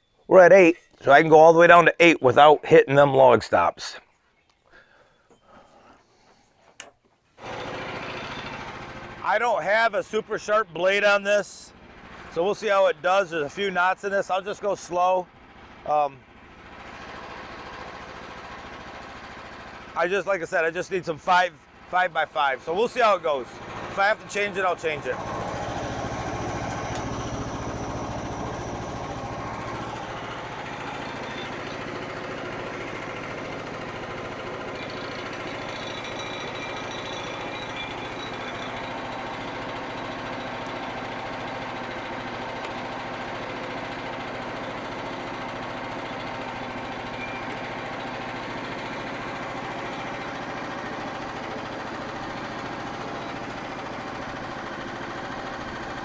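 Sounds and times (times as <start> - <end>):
bandsaw mill cutting log: 7.4 - 13.0, 15.4 - 20.5, 22.4 - 56.0.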